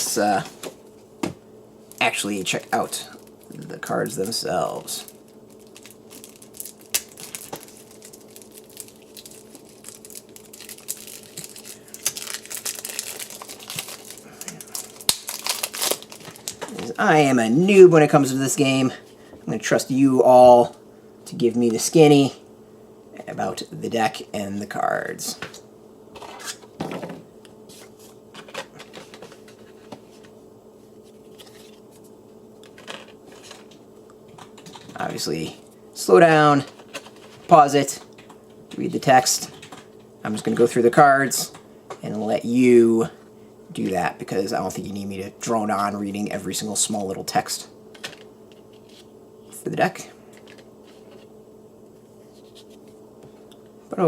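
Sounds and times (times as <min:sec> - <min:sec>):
faint steady hum: 0:00.0 - 0:54.0
card packaging crinkling: 0:01.9 - 0:17.1.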